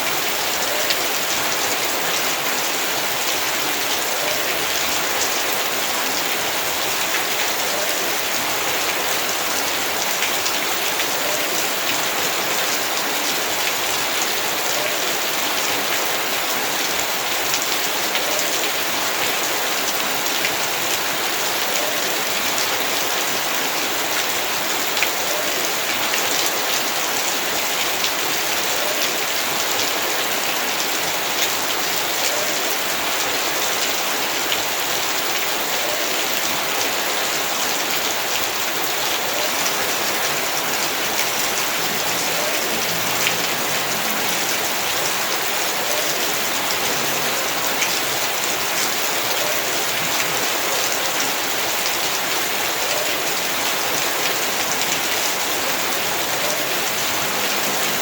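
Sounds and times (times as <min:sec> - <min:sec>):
heavy rain: 0:00.0 - 0:58.0.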